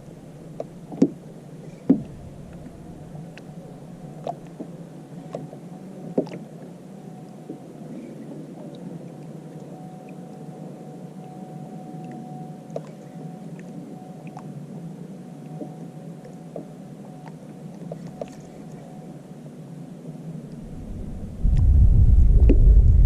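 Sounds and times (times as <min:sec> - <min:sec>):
faint steady whine: 0:00.0 - 0:23.0
kayak rushing on water: 0:20.6 - 0:23.0.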